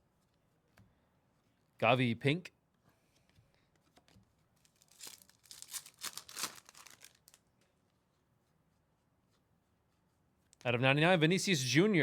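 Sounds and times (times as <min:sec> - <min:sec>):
card pack wrapper tearing: 0:04.7 - 0:07.4.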